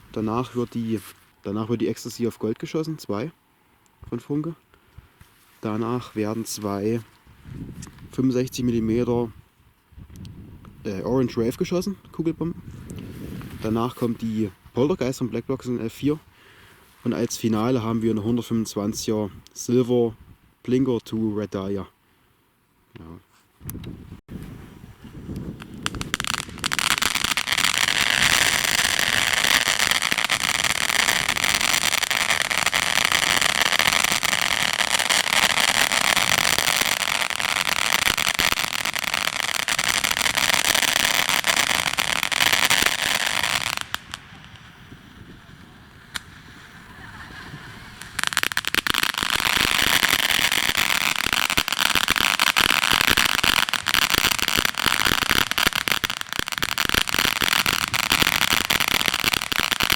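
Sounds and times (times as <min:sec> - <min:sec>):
firework fountains hissing and crackling: 0:24.9 - 0:59.9.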